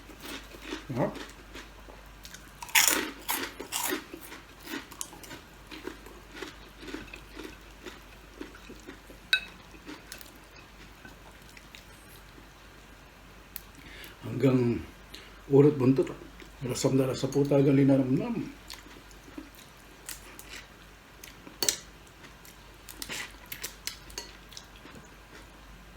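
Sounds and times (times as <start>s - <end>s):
person chewing crunchy food: 0.0s - 12.4s, 18.6s - 25.5s.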